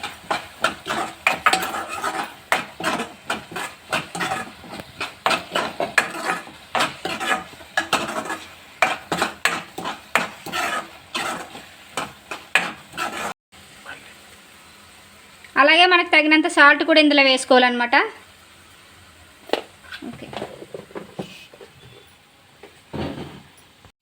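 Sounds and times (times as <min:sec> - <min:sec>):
spatula scraping a pan: 0:00.0 - 0:13.4
masala sizzling: 0:00.0 - 0:23.9.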